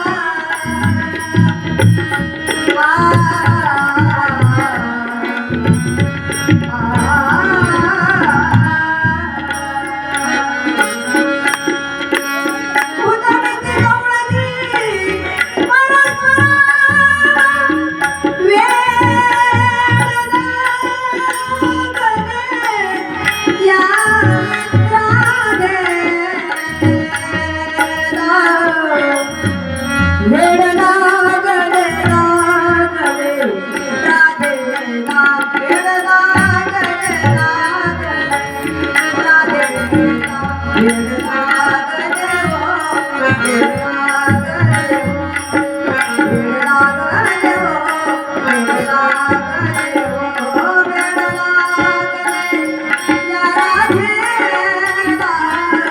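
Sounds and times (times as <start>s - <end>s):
mridang drumming: 0.0s - 55.9s
woman singing devotional song: 0.0s - 55.9s.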